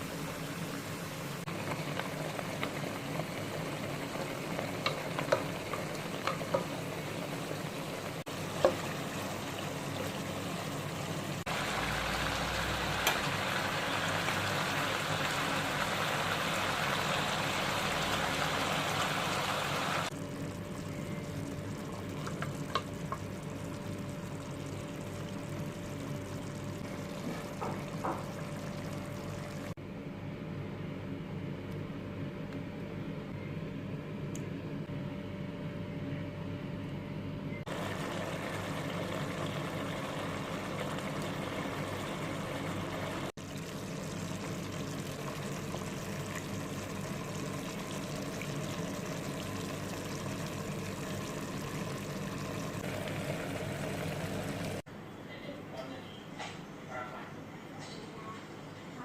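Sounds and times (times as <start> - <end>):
meat sizzling in a pan: 8.3 - 20.2.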